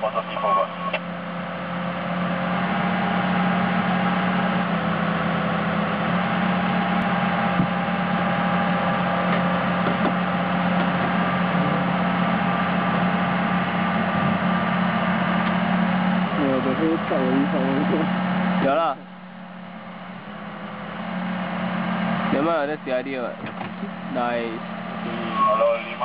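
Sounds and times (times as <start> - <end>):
engine humming: 0.0 - 26.0.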